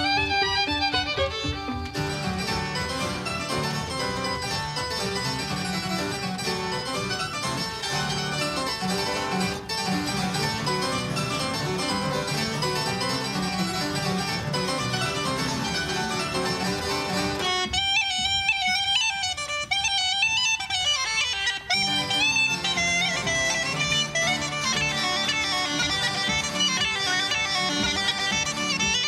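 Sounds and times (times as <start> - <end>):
high ornamented melody: 0.0 - 9.5
folk band playing lively tune: 0.0 - 29.0.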